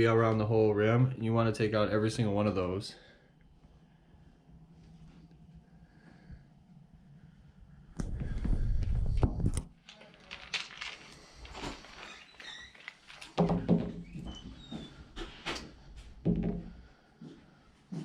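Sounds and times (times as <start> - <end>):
knocks and clunks of handling: 12.8 - 14.4, 15.6 - 16.8.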